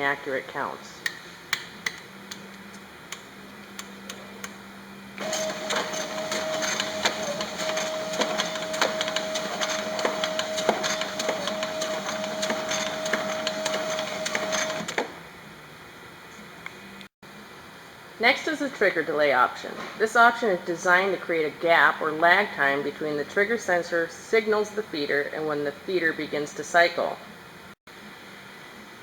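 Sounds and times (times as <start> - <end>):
friction feeder whining and clicking: 5.2 - 15.1.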